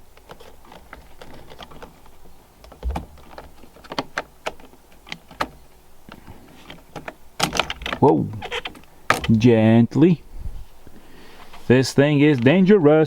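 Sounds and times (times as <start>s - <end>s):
plastic clicks and knocks: 0.1s - 9.4s
dull thump: 2.7s - 3.5s, 9.1s - 9.4s.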